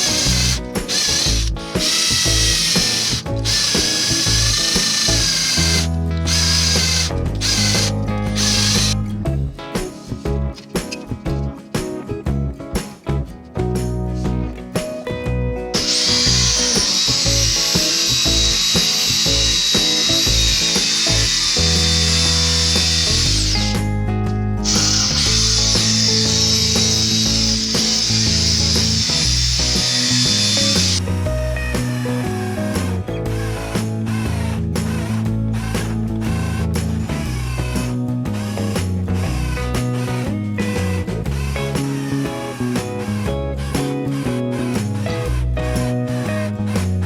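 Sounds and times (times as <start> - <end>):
power tool motor whining: 0.0 - 9.0, 15.8 - 23.9, 24.6 - 31.1
background music with bass line: 0.0 - 47.0.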